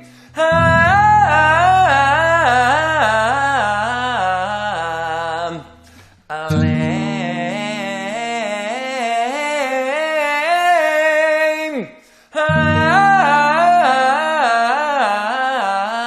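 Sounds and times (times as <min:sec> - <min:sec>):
accompaniment chords: 0:00.0 - 0:08.4
person singing vocal scales: 0:00.0 - 0:16.0.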